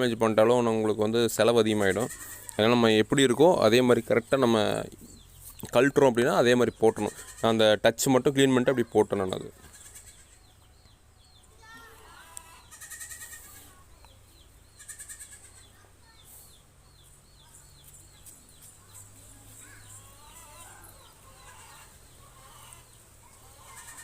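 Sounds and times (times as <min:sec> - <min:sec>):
goats bleating: 0:01.7 - 0:02.6, 0:07.1 - 0:07.6, 0:09.6 - 0:10.5, 0:12.3 - 0:13.6, 0:14.8 - 0:15.7.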